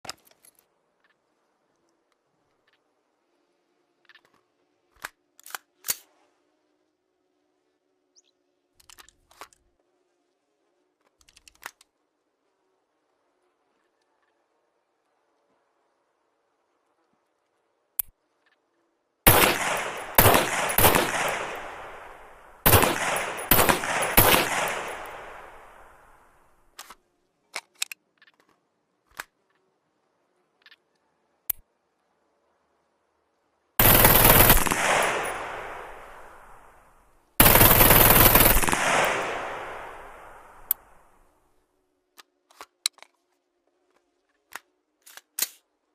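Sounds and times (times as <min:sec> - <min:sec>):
submachine gun bursts echoing: 0:19.3 - 0:26.4, 0:33.8 - 0:36.8, 0:37.4 - 0:41.0.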